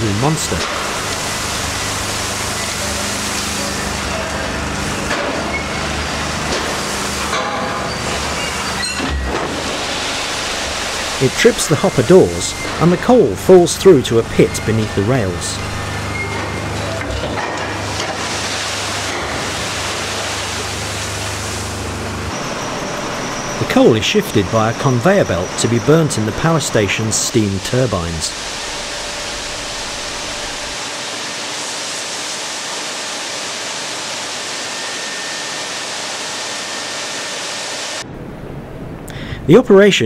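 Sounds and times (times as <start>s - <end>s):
diesel locomotive droning: 0.0s - 18.0s, 18.6s - 31.0s
coal pouring rushing: 0.0s - 35.3s
low hum: 27.7s - 30.8s.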